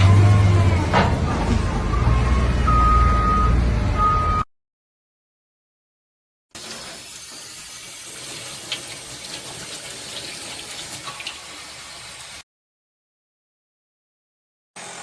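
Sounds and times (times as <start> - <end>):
water spraying hiss: 6.6 - 12.4.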